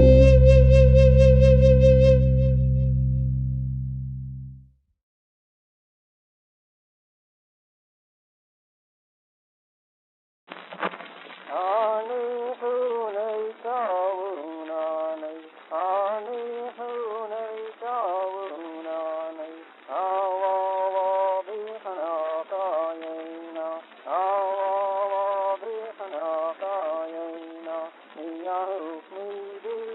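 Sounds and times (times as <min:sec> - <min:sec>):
slow sliding melody: 0:00.0 - 0:04.6.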